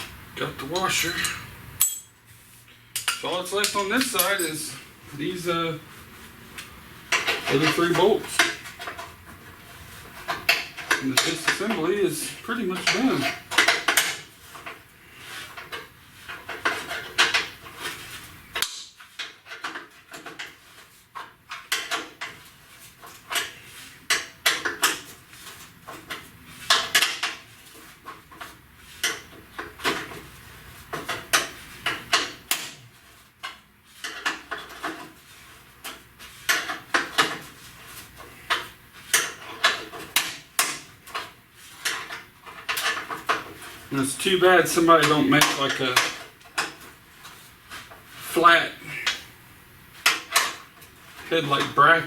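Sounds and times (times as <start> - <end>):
metal tools clinking and clanking: 0.8 - 2.2, 3.0 - 4.8.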